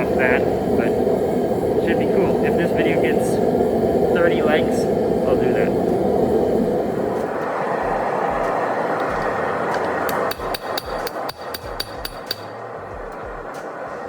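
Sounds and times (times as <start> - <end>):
steady rushing noise: 0.0 - 14.0
hammer ringing on anvil: 10.1 - 12.6.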